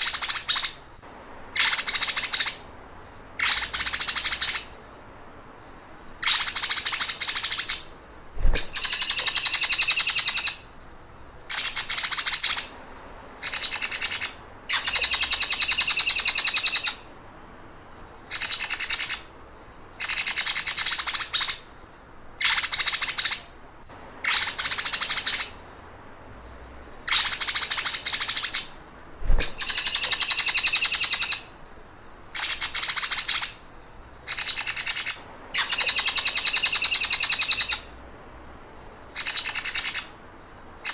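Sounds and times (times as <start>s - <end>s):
songbird rattling trills: 0.0s - 5.0s, 5.6s - 17.0s, 18.1s - 21.7s, 24.1s - 38.0s, 38.8s - 40.9s
soft low thump: 8.4s - 8.8s, 29.2s - 29.6s.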